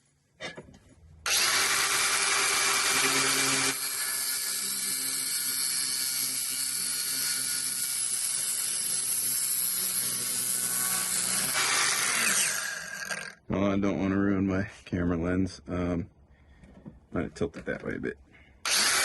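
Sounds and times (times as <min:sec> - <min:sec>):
power tool grinding whine: 0:01.3 - 0:13.4, 0:18.6 - 0:19.0.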